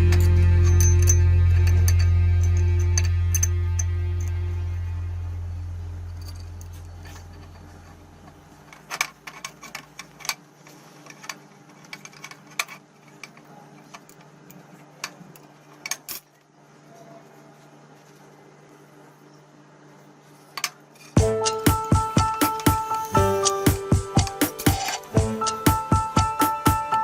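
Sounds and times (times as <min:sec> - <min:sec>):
low sustained note: 0:00.0 - 0:08.2
faint steady hum: 0:00.0 - 0:27.0.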